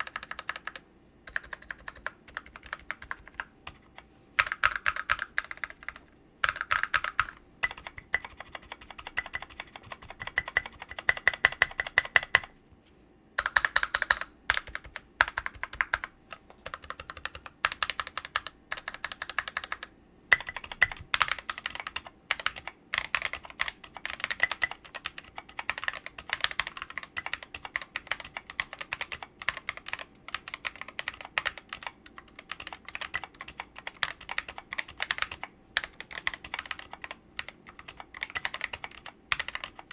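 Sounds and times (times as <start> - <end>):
mechanical keyboard key clacks: 13.4 - 39.9.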